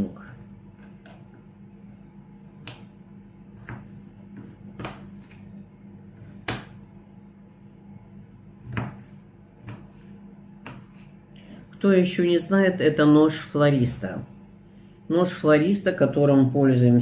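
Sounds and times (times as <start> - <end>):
microwave oven humming: 0.0 - 17.0.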